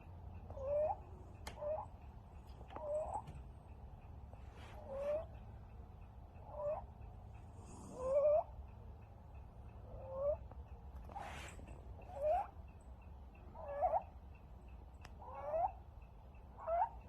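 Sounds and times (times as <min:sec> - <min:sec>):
kitten wheezing: 0:07.6 - 0:08.5.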